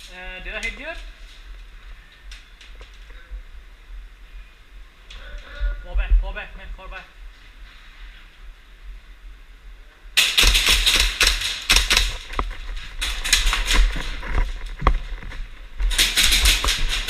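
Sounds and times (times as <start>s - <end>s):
airsoft guns firing bursts: 10.2s - 12.3s, 15.9s - 17.0s.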